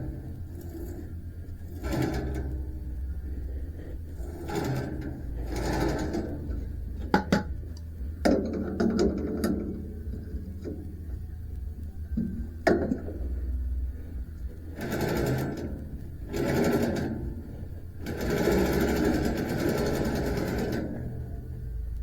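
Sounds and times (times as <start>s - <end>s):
steady low hum: 0.0s - 22.0s
hand tools ratcheting on metal: 18.0s - 21.2s.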